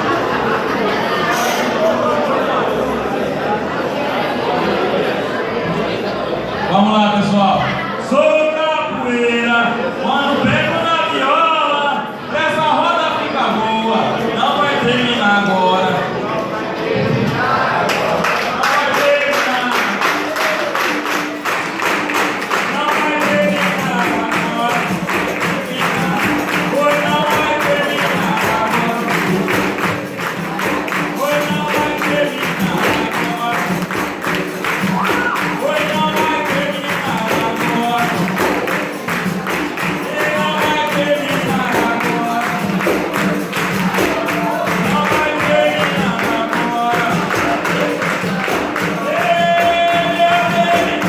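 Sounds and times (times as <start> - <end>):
jingling pandeiro: 19.8 - 51.0
call-and-response singing: 20.0 - 51.0.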